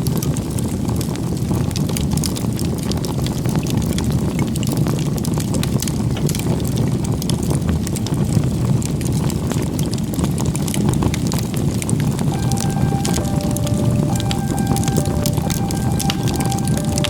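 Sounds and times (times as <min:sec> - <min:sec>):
campfire crackles and pops: 0:00.0 - 0:17.0
low rumble of fire: 0:00.0 - 0:17.0.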